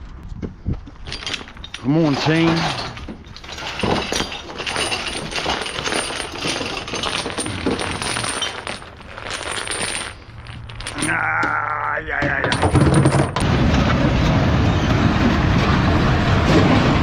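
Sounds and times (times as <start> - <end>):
scrap metal clattering: 1.0 - 11.2.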